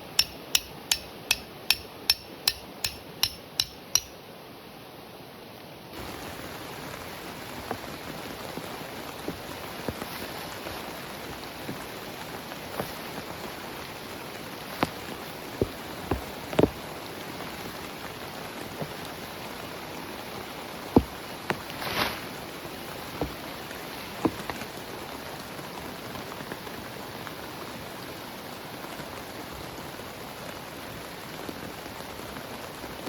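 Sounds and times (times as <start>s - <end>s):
heavy rain falling: 6.0s - 33.0s.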